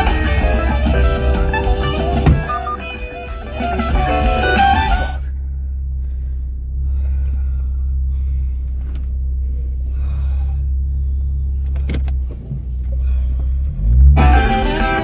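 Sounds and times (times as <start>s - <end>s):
guitar music: 0.0s - 5.2s, 14.0s - 15.0s
car engine rumbling: 0.0s - 15.0s.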